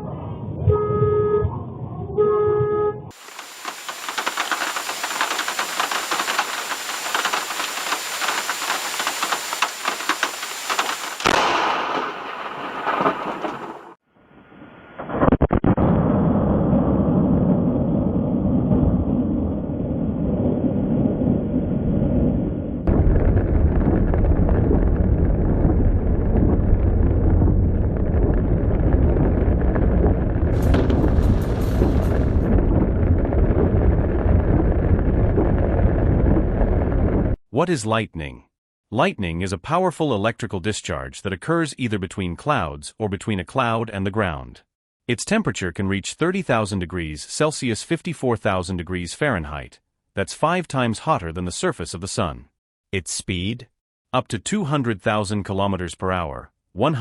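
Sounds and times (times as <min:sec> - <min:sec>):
muffled storm rushing: 0:00.0 - 0:00.8, 0:03.2 - 0:37.4
heavy rain falling: 0:03.2 - 0:14.0, 0:30.5 - 0:32.5.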